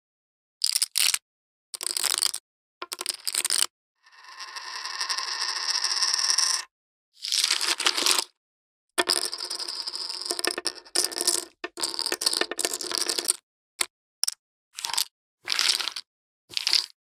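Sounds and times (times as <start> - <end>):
poker chips clattering: 9.0 - 13.4.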